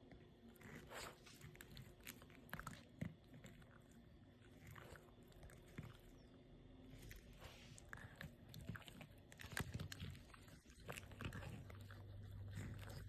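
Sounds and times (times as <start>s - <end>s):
dog crunching ice cubes: 7.9s - 13.0s.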